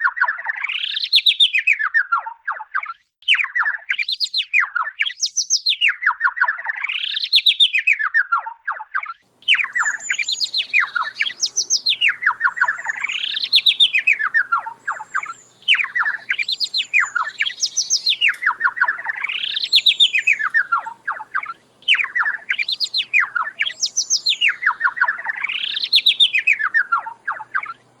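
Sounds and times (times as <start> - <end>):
faint high bird whistles: 3.3 - 6.0, 9.5 - 27.8
songbird trilling: 9.4 - 27.9.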